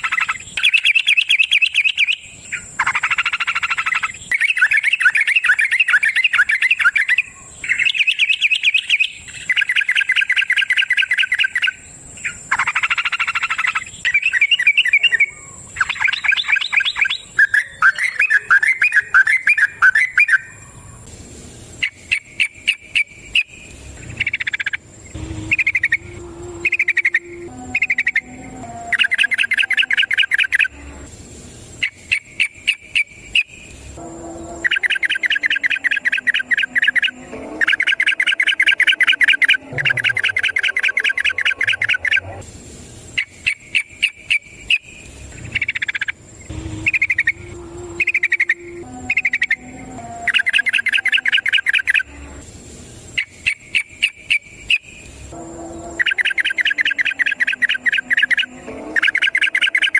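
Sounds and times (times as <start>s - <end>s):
bulbul rapid trilling song: 0.0s - 21.1s, 21.8s - 31.0s, 31.7s - 42.4s, 43.1s - 52.3s, 53.1s - 59.9s
bird short calls: 34.6s - 42.4s.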